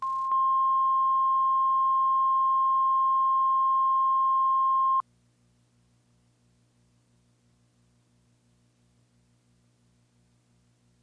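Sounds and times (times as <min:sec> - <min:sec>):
sine test tone: 0:00.0 - 0:05.0
faint mains hum: 0:00.0 - 0:11.0.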